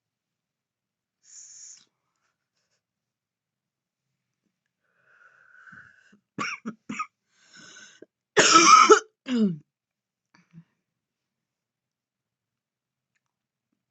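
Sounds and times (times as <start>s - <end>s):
woman coughing: 6.4s - 7.1s, 8.4s - 9.6s.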